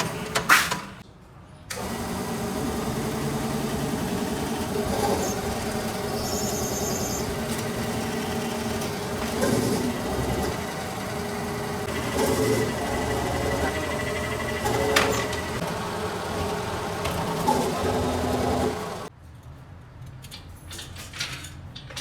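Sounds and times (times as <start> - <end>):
machine motor humming: 1.7 - 19.1.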